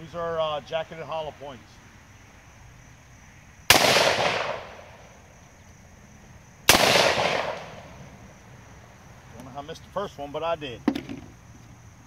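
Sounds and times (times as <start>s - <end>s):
revolver shots with echo: 3.7s - 5.0s, 6.7s - 8.0s.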